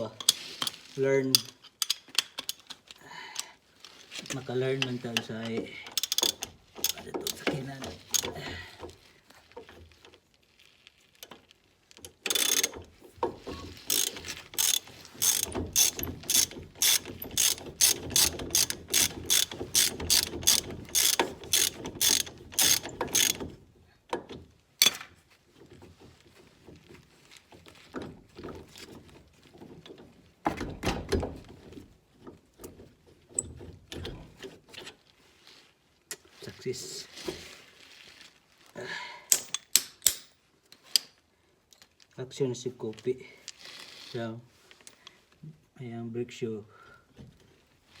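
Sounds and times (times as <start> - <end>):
ratchet wrench clicking: 6.0 - 7.5, 12.3 - 12.8, 13.8 - 23.4.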